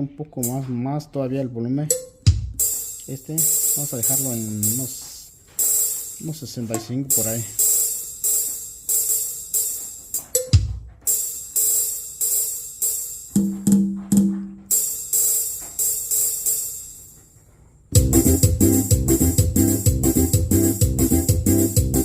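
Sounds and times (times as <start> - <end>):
hi-hat and cymbal strikes: 1.9 - 13.7, 14.7 - 17.2, 18.0 - 22.0
programmed drum pattern: 1.9 - 16.9, 17.9 - 22.0
kick drum thump: 2.2 - 2.7, 10.5 - 11.1, 13.4 - 14.7, 18.0 - 22.0
deep drum hits: 2.3 - 2.7, 18.0 - 21.4
bass and keyboard accompaniment: 17.9 - 22.0.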